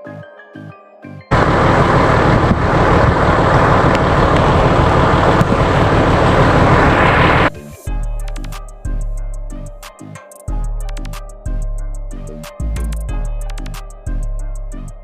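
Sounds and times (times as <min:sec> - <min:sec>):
off-road vehicle engine rumbling: 0:01.3 - 0:07.5
electronic music with beat: 0:07.5 - 0:15.0.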